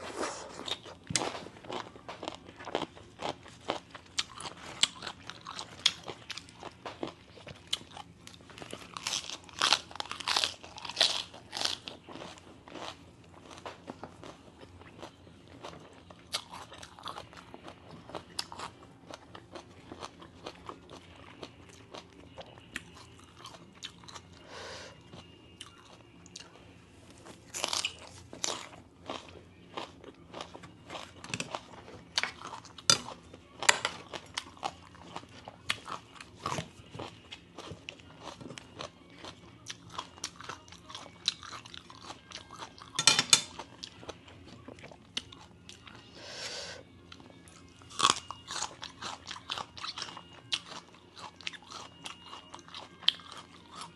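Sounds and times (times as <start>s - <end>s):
person chewing crunchy vegetables: 0.0s - 53.9s.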